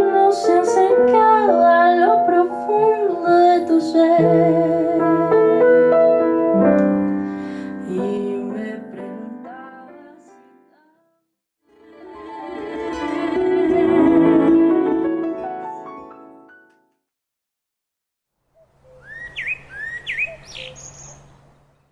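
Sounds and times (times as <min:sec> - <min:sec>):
woman singing with vibrato: 0:00.0 - 0:06.0, 0:07.5 - 0:10.4, 0:11.9 - 0:15.2
piano notes: 0:00.0 - 0:10.7, 0:11.8 - 0:17.0.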